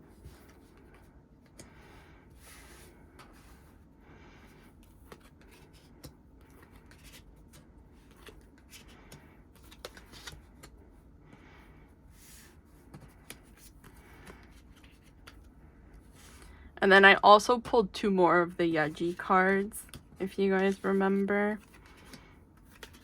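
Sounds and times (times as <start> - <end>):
cards sliding and clicking: 5.1 - 10.8, 21.6 - 23.0.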